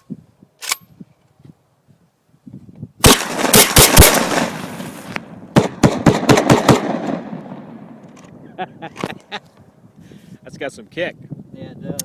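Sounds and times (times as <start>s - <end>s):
gunshots echoing: 3.0s - 8.1s.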